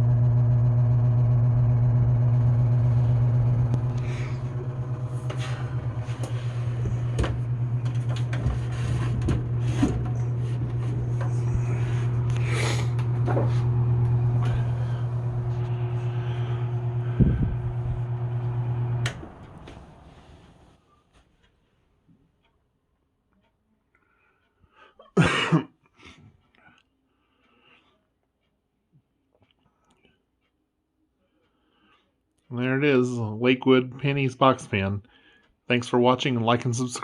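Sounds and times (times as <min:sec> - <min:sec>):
box fan motor hum: 0:00.0 - 0:20.6.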